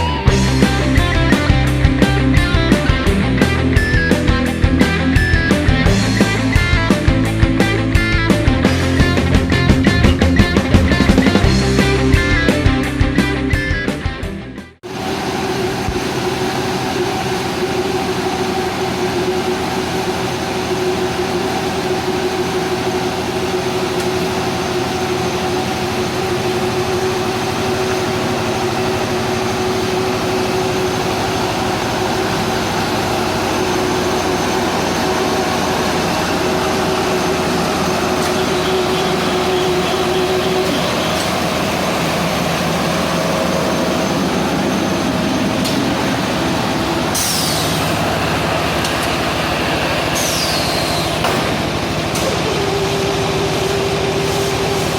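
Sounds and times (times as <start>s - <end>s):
baler machine running: 0.0s - 54.9s
machine humming tones: 14.8s - 54.9s.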